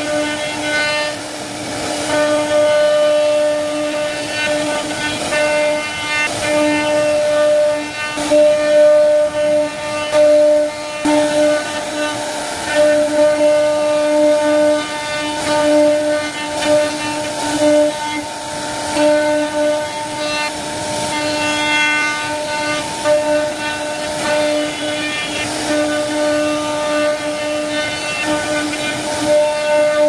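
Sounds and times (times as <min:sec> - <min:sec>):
router spindle whining: 0:00.0 - 0:30.0
bit rasping through wood: 0:02.0 - 0:30.0.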